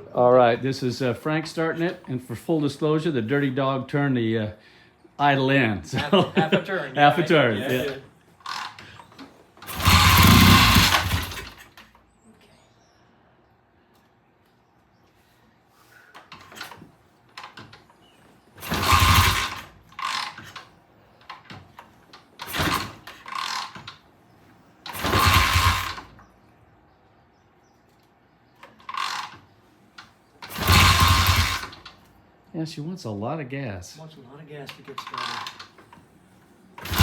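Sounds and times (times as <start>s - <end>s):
motorcycle kick-start kicks: 7.7s - 12.1s, 16.1s - 18.0s, 18.6s - 24.0s, 24.8s - 26.4s, 28.5s - 32.2s, 34.7s - 36.0s, 36.8s - 37.0s.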